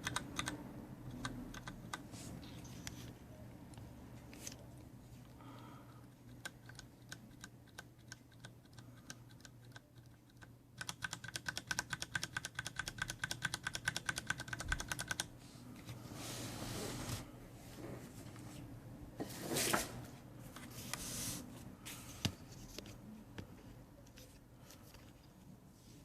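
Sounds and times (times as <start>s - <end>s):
keyboard typing: 0.0s - 2.1s, 6.3s - 15.3s.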